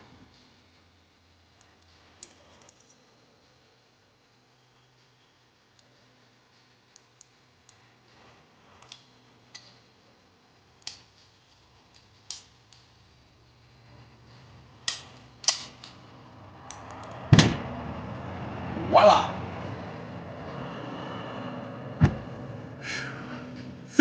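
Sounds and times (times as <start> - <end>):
pistol parts clicking together: 14.8 - 16.0.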